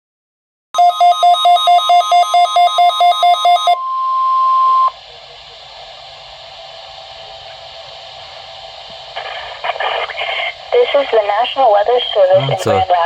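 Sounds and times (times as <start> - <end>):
steady alarm tone: 0.8 - 9.6
broadcast static hiss: 4.5 - 13.0.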